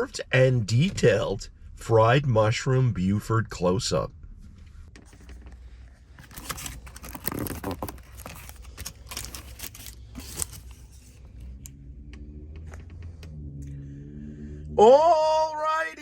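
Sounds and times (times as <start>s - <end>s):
paper wrapper crinkling: 6.2s - 11.2s.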